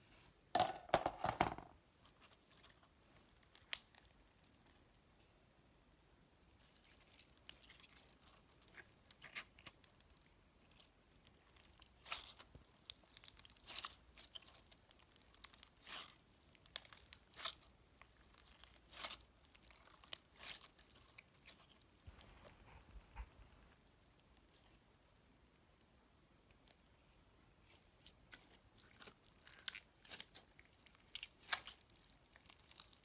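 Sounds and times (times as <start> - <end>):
slime crunching and crackling: 2.1 - 5.0, 6.5 - 22.5, 26.5 - 33.0.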